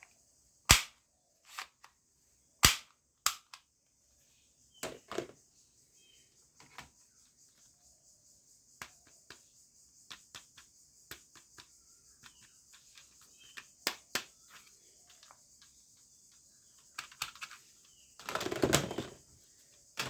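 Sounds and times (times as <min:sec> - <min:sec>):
plastic toy guns clicking: 0:00.7 - 0:01.9, 0:02.6 - 0:03.7.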